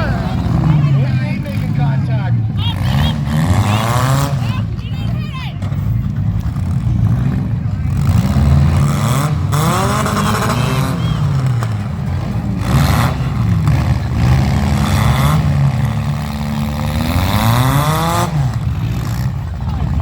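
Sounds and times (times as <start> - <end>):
car engines revving: 0.0 - 20.0.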